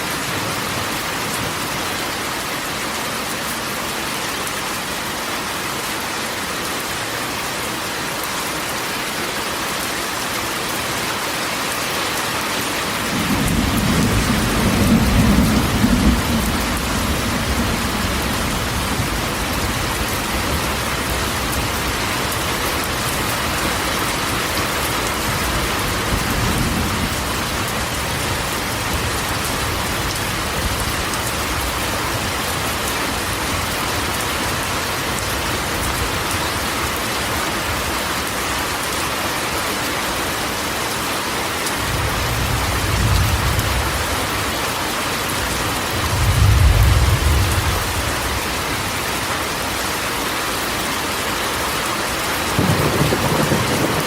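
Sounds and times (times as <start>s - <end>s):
rain on a metal roof: 0.0s - 54.0s
low thunder rumbling: 13.1s - 21.8s, 41.9s - 44.5s, 45.8s - 48.6s, 52.5s - 54.0s.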